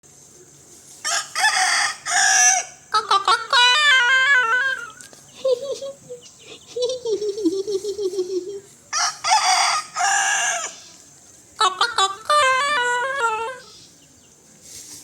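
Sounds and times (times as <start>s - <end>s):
harsh crowing calls: 1.0s - 5.1s, 8.9s - 14.0s
chicken cackling: 1.0s - 13.9s
chicken clucking: 11.6s - 13.6s.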